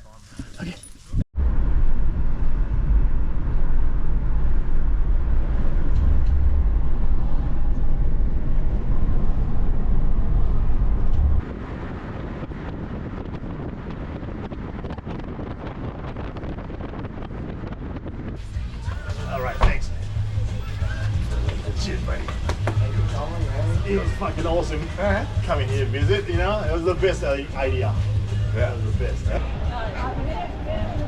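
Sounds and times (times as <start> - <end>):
moving car road noise: 1.4 - 31.0.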